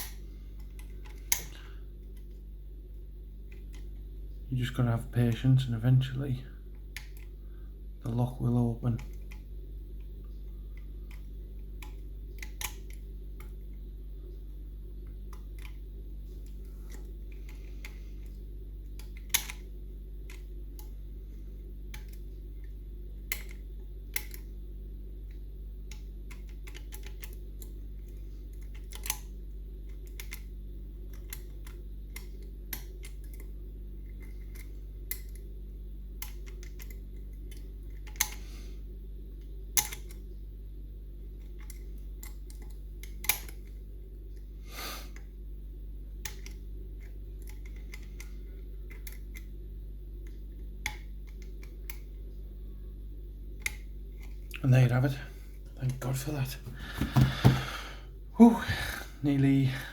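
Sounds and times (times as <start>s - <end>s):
small sharp metallic clicks: 0.0s - 2.3s, 10.7s - 13.6s, 18.8s - 19.7s, 23.3s - 24.5s, 25.2s - 29.3s, 29.9s - 30.5s, 36.2s - 38.4s, 39.8s - 40.2s, 41.4s - 43.8s, 46.2s - 49.5s, 50.2s - 52.1s, 53.6s - 54.6s
steady low hum: 0.0s - 59.9s.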